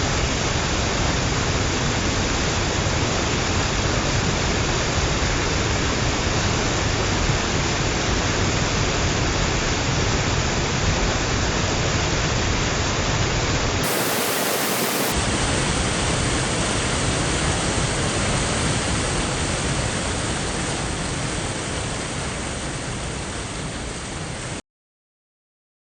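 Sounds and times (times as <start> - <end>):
small waterfall rushing: 13.8 - 24.6.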